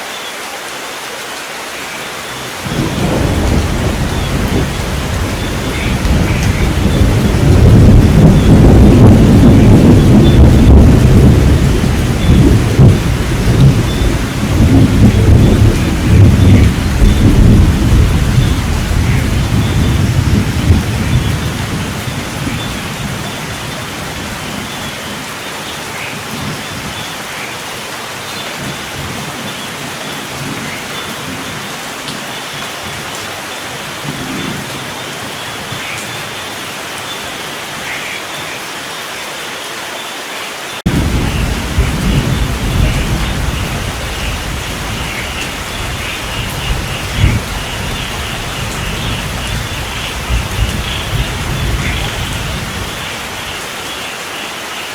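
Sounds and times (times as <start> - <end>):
heavy rain: 0.0 - 54.9
deep rolling thunder: 2.6 - 24.4, 40.9 - 53.1.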